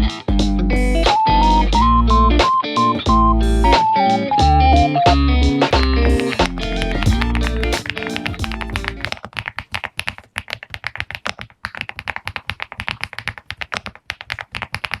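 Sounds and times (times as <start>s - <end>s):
guitar music: 0.0s - 9.1s
mechanical keyboard typing: 7.2s - 15.0s.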